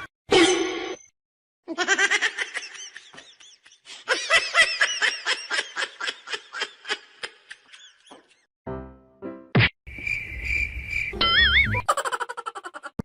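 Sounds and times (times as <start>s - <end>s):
rhythmic laughter: 11.3s - 13.0s.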